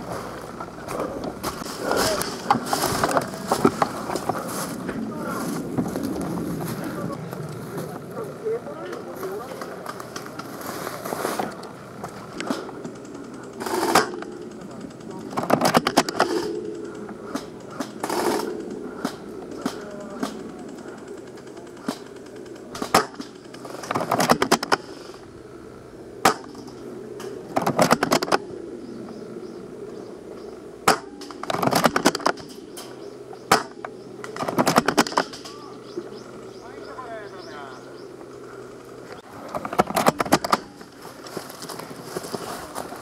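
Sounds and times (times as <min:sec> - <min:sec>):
airsoft automatic fire bursts: 0:12.5 - 0:25.1
single airsoft gun shots: 0:30.8 - 0:32.4, 0:33.5 - 0:33.8.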